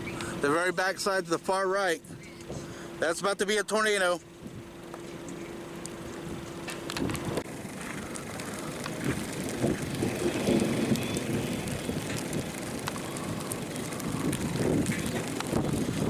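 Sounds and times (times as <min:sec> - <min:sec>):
wind: 0:00.0 - 0:16.0
rain: 0:04.3 - 0:16.0.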